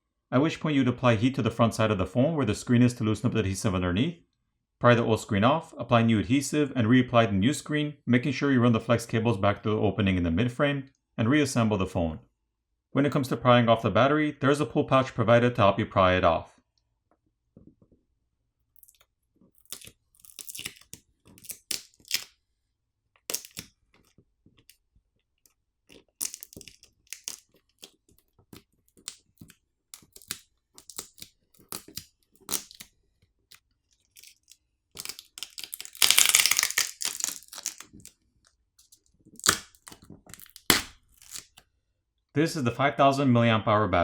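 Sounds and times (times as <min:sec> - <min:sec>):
adhesive ripping: 0:18.8 - 0:22.4, 0:23.2 - 0:24.8, 0:25.9 - 0:32.9, 0:33.5 - 0:38.2, 0:38.8 - 0:41.6.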